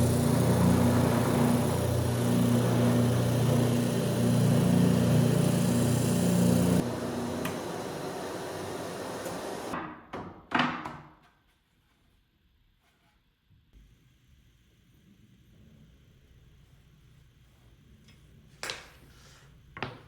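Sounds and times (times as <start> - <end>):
power tool motor humming: 0.0 - 9.7.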